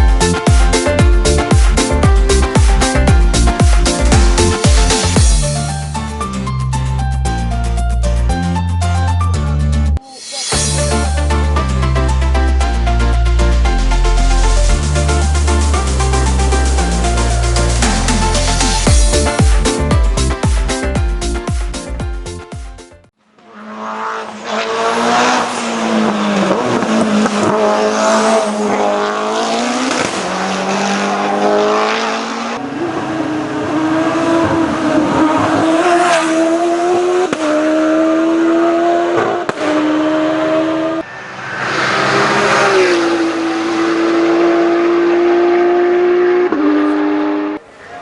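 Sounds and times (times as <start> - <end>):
race car engine at full throttle: 23.4 - 48.0.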